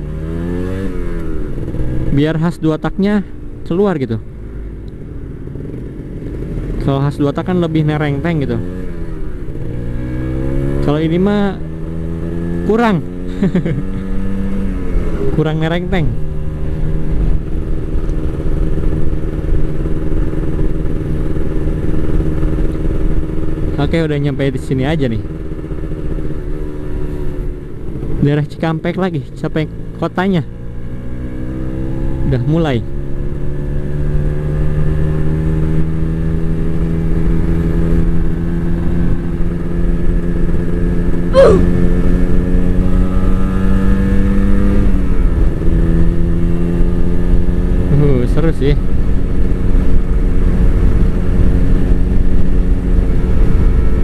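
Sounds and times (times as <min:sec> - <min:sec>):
two-stroke motorcycle engine running: 0:00.0 - 0:54.0
low wind noise: 0:48.8 - 0:54.0.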